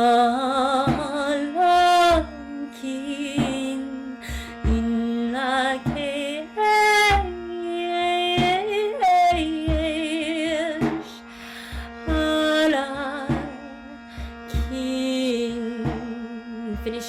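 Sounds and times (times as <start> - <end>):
soft low drum beat: 0.7 - 1.3, 3.3 - 6.3, 7.1 - 7.4, 8.2 - 11.1, 11.8 - 17.0
steady drone: 0.9 - 17.0.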